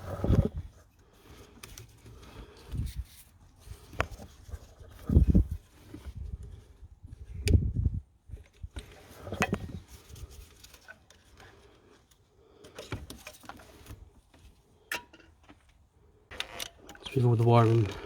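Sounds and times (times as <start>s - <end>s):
wiring loom rattling: 16.3s - 18.0s.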